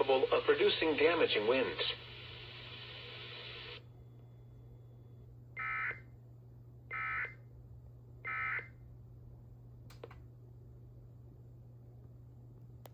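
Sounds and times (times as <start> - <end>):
steady low hum: 0.0 - 12.9
click: 9.8 - 10.3.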